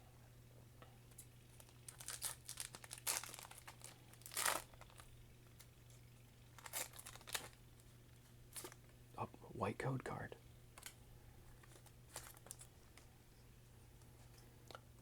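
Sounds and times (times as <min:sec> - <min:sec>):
foil wrapper crinkling and tearing: 0:01.6 - 0:05.1, 0:06.5 - 0:07.6, 0:11.6 - 0:12.7.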